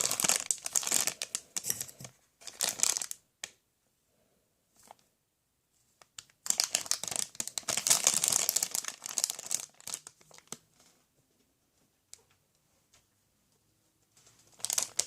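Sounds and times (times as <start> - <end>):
plastic or paper crinkling: 0.0 - 3.2, 6.0 - 10.6, 14.2 - 15.0.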